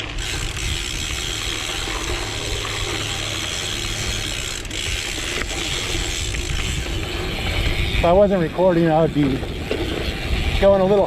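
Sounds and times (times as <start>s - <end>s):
bicycle freewheel buzzing: 0.0s - 11.0s.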